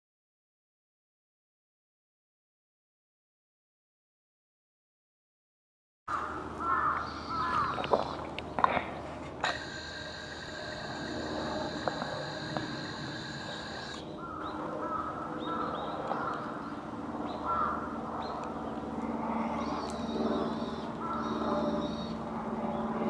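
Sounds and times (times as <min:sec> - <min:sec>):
crows cawing: 0:06.1 - 0:08.3, 0:09.4 - 0:16.7, 0:17.3 - 0:18.0, 0:20.0 - 0:22.2
low steady hum: 0:06.2 - 0:23.0
steady ringing tone: 0:09.4 - 0:14.1, 0:19.5 - 0:23.0.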